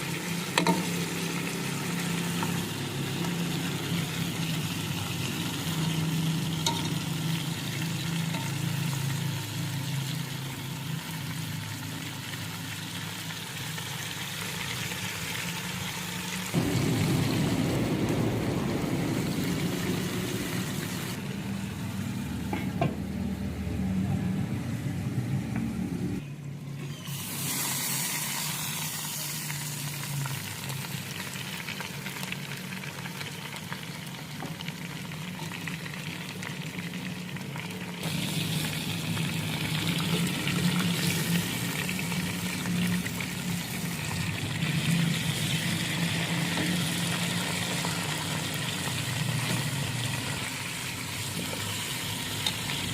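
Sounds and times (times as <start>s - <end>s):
food sizzling in a pan: 0.0s - 21.2s, 27.1s - 52.9s
steady low hum: 16.6s - 26.2s.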